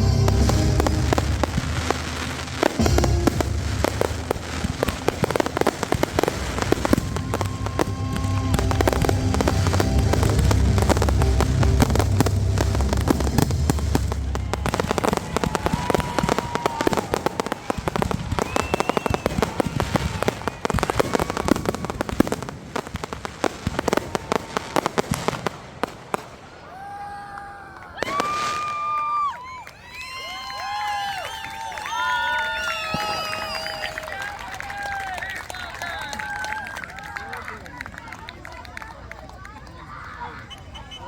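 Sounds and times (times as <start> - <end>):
heavy booming rumble: 0.0 - 16.5
fireworks cracks and bangs: 0.0 - 29.6, 30.2 - 38.2
fireworks crackles: 0.0 - 41.0.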